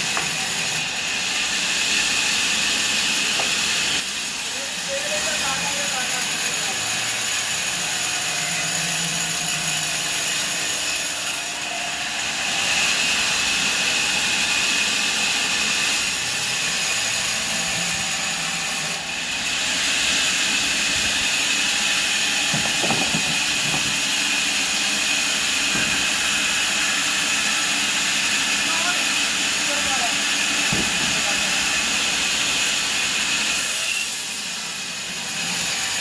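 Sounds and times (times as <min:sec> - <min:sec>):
sawmill saw hiss and whine: 0:12.5 - 0:36.0.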